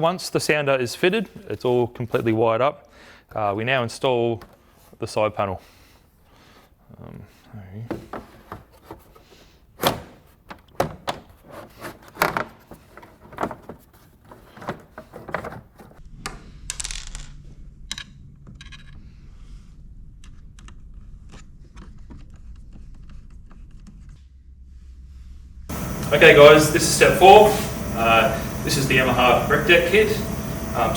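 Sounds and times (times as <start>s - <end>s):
low steady hum: 6.8s - 30.9s
plastic panel clicks and knocks: 9.8s - 16.0s.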